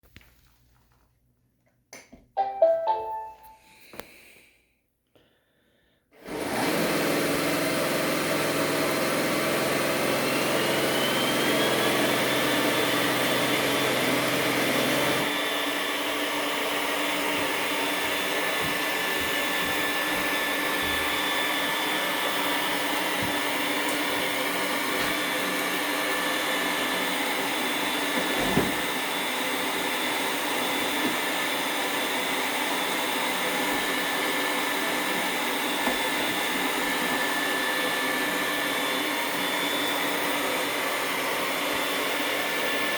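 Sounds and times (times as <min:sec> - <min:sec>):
robot vacuum motor whine: 0:06.2 - 0:42.9
thump: 0:28.4 - 0:28.8.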